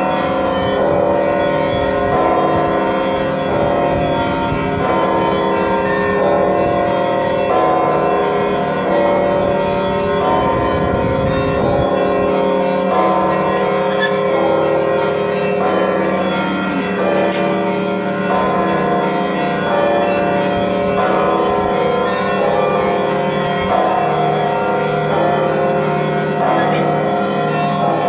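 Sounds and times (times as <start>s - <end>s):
church bells ringing: 0.0s - 28.0s.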